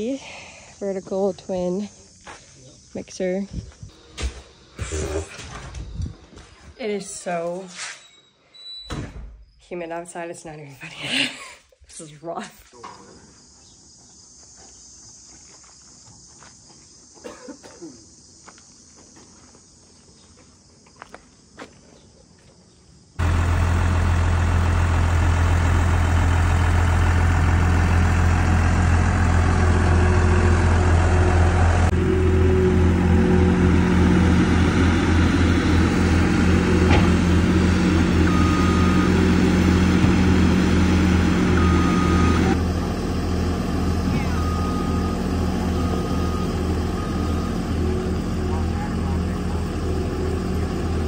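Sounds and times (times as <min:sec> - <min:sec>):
tractor engine running: 0:23.2 - 0:51.0.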